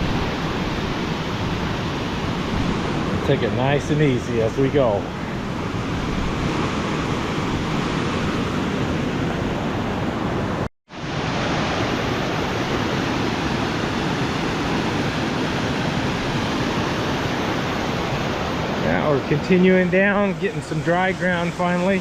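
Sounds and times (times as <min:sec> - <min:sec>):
creek rushing over rocks: 0:10.9 - 0:22.0.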